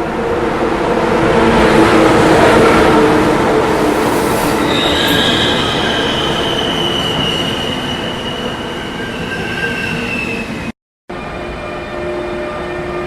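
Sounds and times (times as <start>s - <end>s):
high brake squeal: 3.8s - 10.7s.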